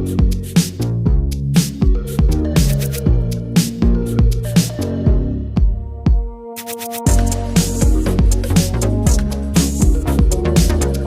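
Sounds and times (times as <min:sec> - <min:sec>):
deep kick drum thumps: 0:00.0 - 0:04.4, 0:05.1 - 0:06.3, 0:07.1 - 0:10.9
sustained bass line: 0:00.0 - 0:06.5, 0:07.1 - 0:11.0
electronic music with steady beat: 0:00.0 - 0:11.0
sharp percussive hit: 0:06.1 - 0:10.0.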